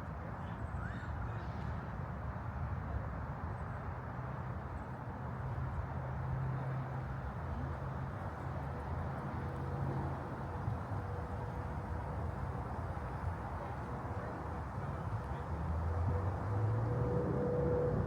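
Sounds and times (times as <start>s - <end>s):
distant road traffic rumble: 6.6s - 18.0s.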